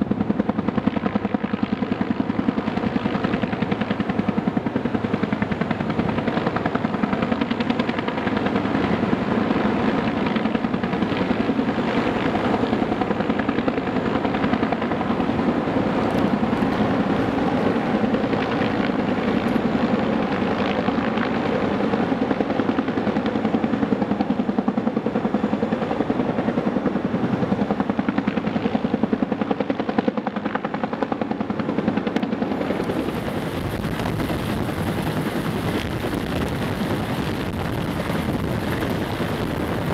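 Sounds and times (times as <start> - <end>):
helicopter rotor beating: 0.0 - 39.9
wind noise on microphone: 32.0 - 39.9.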